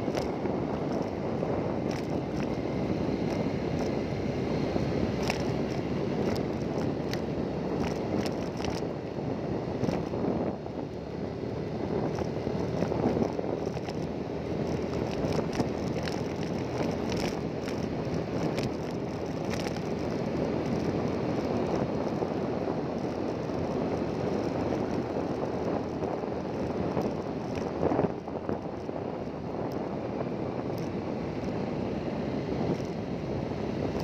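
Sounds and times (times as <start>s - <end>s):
engine running: 0.0s - 34.0s
wind noise on microphone: 0.0s - 34.0s
small clicks: 5.2s - 8.9s, 12.1s - 21.5s.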